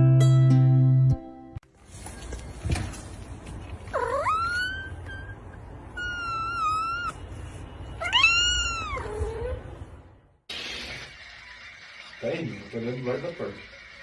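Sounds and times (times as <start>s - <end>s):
cat meowing: 4.0s - 7.2s, 8.0s - 9.6s.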